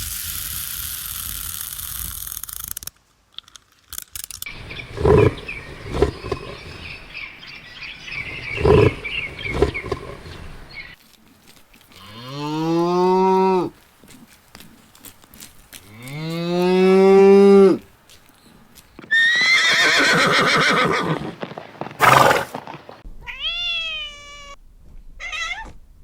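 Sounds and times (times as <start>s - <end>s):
steady hiss: 0.0s - 3.3s
cow mooing: 4.5s - 7.2s, 8.2s - 10.8s, 11.9s - 13.8s, 15.8s - 17.8s
high chirping: 4.5s - 11.0s.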